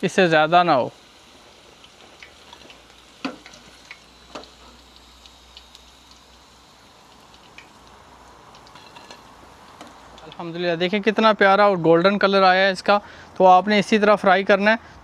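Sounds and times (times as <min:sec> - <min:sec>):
oil sizzling while frying: 0:00.0 - 0:11.0.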